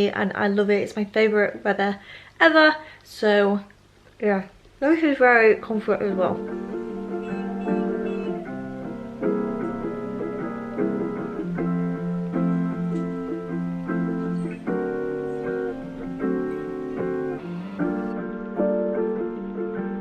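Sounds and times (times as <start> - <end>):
mellow plucked guitar chords: 6.2 - 20.0.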